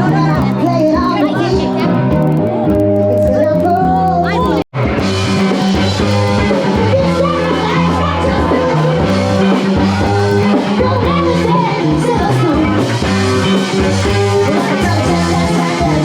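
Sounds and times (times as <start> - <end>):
live rock band playing: 0.0 - 16.0
person singing: 3.0 - 4.7, 5.7 - 16.0.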